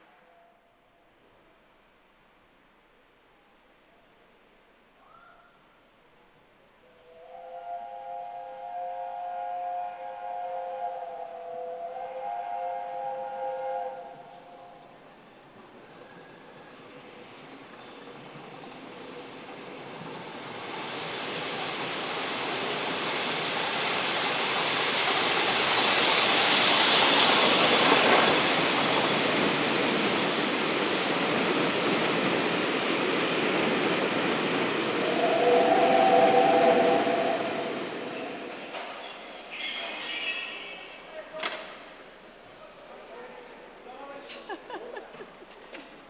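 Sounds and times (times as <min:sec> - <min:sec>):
train wheels rumbling on rails: 0:14.2 - 0:42.2
high brake squeal: 0:36.7 - 0:41.4.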